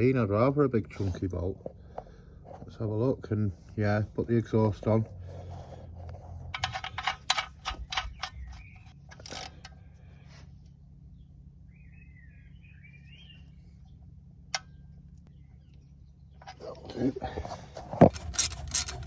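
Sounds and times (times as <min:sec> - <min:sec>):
metal tools clinking: 0:06.6 - 0:09.7, 0:18.0 - 0:19.0.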